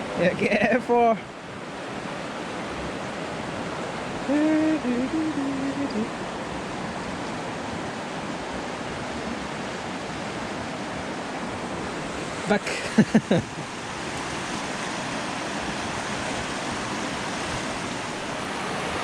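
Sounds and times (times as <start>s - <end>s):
flowing water: 0.0s - 19.0s
person's voice: 0.2s - 1.2s, 4.2s - 6.1s, 12.5s - 13.2s.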